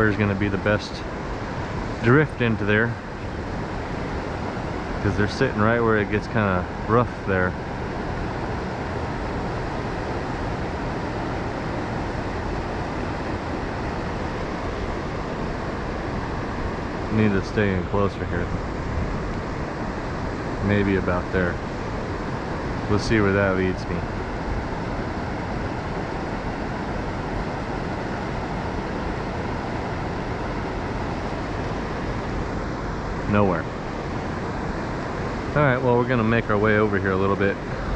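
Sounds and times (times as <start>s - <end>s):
river water rushing: 7.6s - 22.9s.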